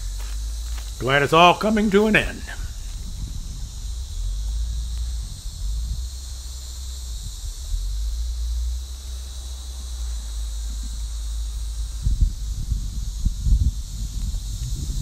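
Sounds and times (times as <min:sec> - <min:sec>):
insects chirring: 0:00.0 - 0:15.0
wind buffeting microphone: 0:02.2 - 0:06.5, 0:11.6 - 0:15.0.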